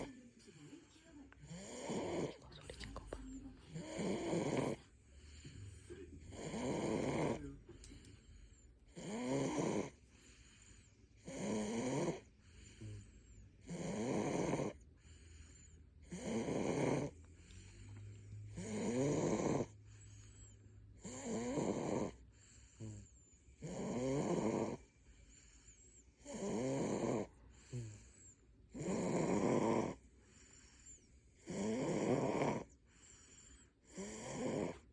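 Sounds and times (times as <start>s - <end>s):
baby snoring: 1.5s - 2.8s, 3.7s - 4.9s, 5.5s - 7.6s, 8.9s - 10.0s, 11.2s - 14.8s, 16.1s - 17.2s, 18.3s - 19.9s, 21.0s - 22.2s, 23.6s - 24.9s, 26.2s - 28.0s, 28.8s - 30.0s, 31.4s - 32.7s, 33.9s - 34.9s.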